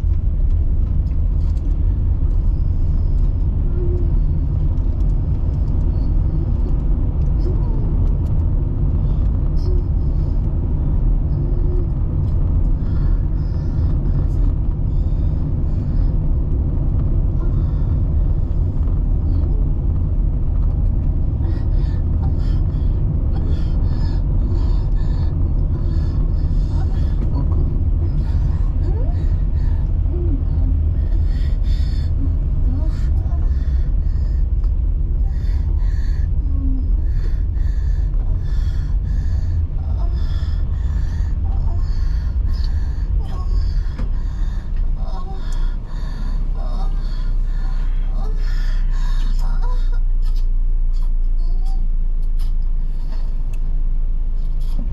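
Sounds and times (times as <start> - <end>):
car road and engine rumble: 0.0 - 54.9
person breathing hard: 12.2 - 16.3, 21.3 - 50.1.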